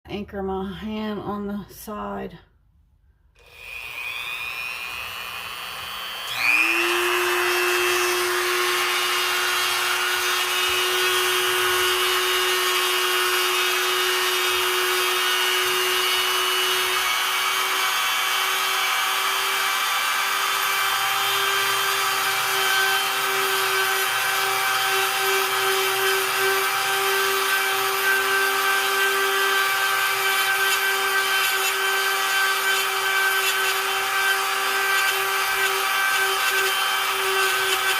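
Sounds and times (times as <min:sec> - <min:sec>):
power drill whining: 0:03.4 - 0:37.9.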